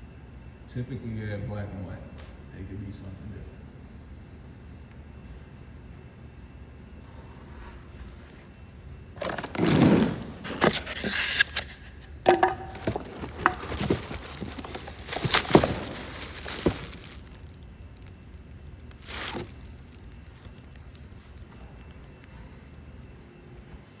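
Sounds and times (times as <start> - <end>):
objects being handled: 9.2 - 21.8.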